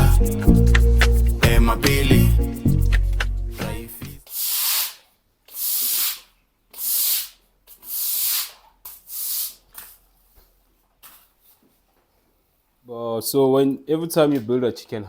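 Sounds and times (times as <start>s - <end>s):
broom swishing wet floor: 4.2s - 10.3s
broom scraping: 4.2s - 10.4s.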